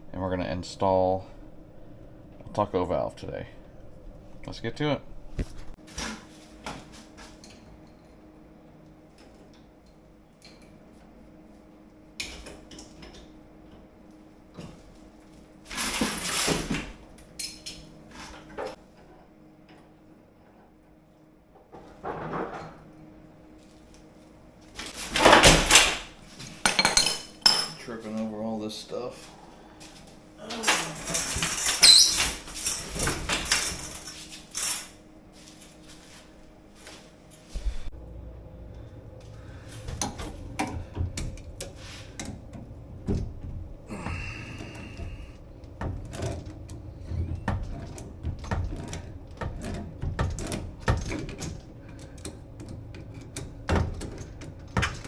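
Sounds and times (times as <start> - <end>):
steady low hum: 0.0 - 31.8, 32.4 - 55.0
tools clattering: 25.0 - 27.9, 30.6 - 35.0.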